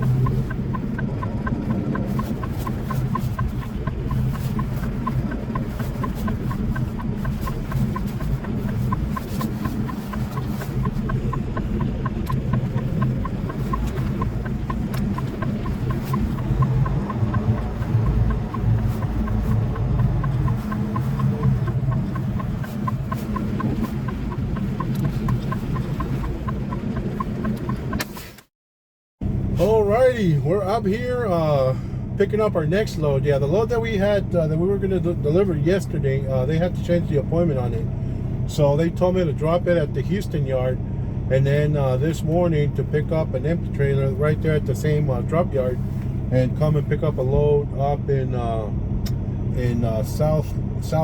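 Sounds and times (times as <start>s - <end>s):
quick even ticking: 0.0s - 28.2s
truck engine droning: 0.0s - 28.5s, 29.2s - 51.0s.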